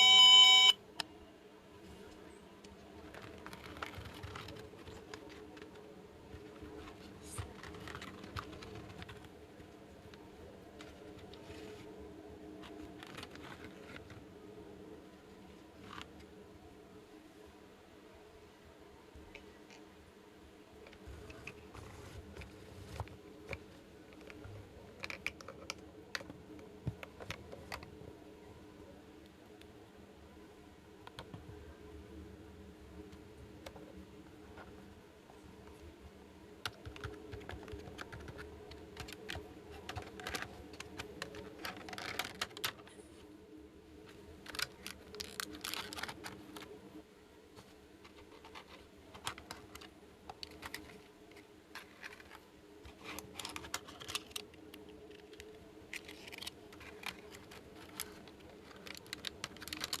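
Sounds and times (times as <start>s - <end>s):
faint steady hum: 0.0s - 60.0s
plastic toy pieces clicking: 36.6s - 42.9s, 53.2s - 60.0s.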